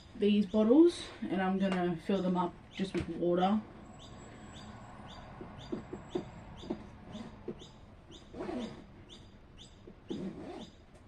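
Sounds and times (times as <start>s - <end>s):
bird chirping: 3.8s - 10.8s.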